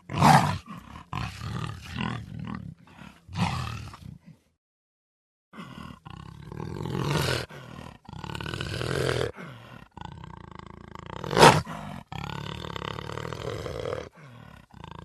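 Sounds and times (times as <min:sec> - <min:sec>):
cheetah growling: 0:00.0 - 0:04.4, 0:05.6 - 0:15.0.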